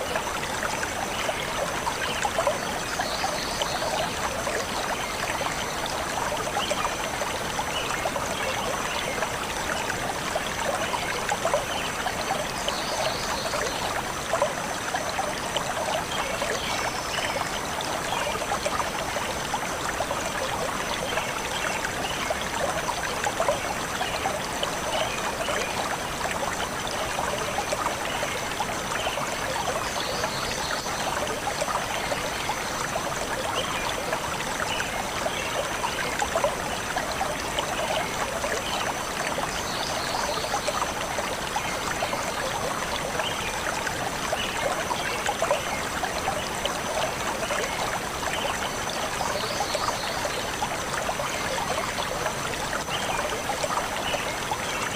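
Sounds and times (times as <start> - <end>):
stream flowing and trickling: 0.0 - 54.9.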